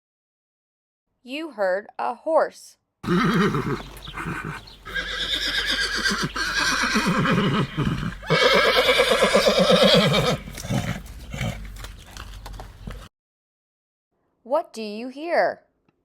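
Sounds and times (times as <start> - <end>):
horse neighing: 3.0 - 11.6.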